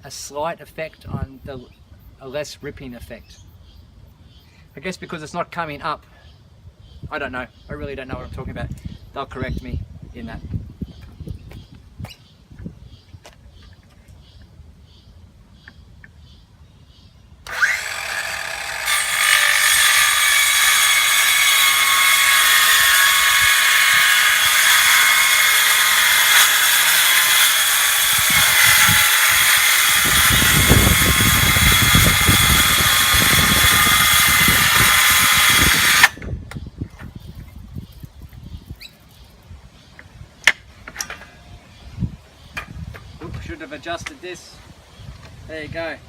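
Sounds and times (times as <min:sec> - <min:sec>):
power saw cutting wood: 0:17.4 - 0:36.2.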